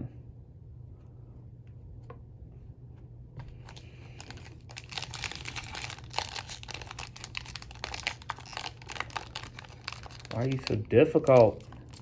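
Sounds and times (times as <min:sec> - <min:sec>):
foil wrapper crinkling and tearing: 0:03.6 - 0:12.0.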